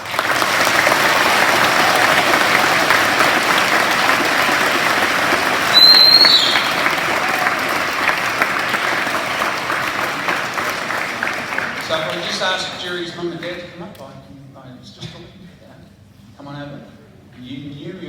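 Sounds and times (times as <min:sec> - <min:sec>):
audience clapping: 0:00.0 - 0:13.7
short high whistle: 0:05.7 - 0:06.8.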